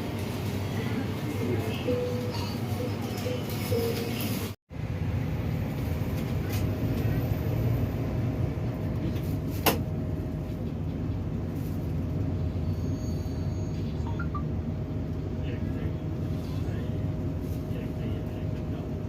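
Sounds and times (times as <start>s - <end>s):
vehicle rumble from inside: 4.7s - 19.0s.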